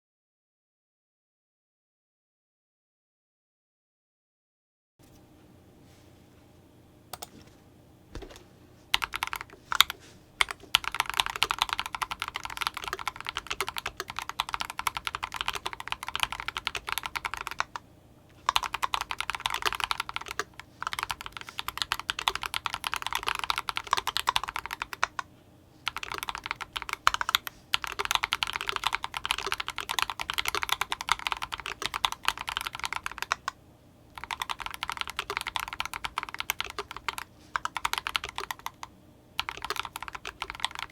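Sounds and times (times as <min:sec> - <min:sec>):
fast typing on mechanical keyboard: 0:08.2 - 0:17.8, 0:18.4 - 0:40.9.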